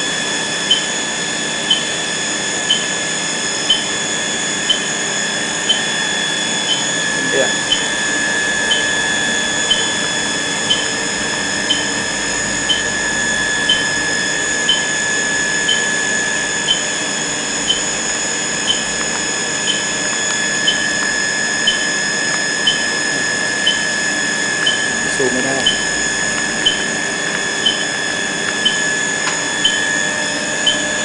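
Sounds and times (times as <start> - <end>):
welder electronic whine: 0.0 - 31.0.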